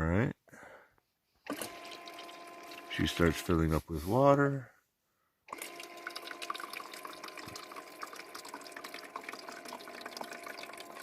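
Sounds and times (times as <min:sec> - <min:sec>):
water pump humming: 0:01.5 - 0:03.7, 0:05.5 - 0:11.0
water trickling and dripping: 0:01.7 - 0:03.0, 0:05.7 - 0:11.0.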